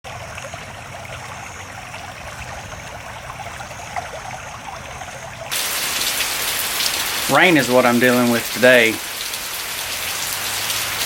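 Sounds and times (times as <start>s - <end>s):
rainwater trickling and dripping: 0.0s - 11.0s
dense rain hitting a surface: 5.5s - 11.0s.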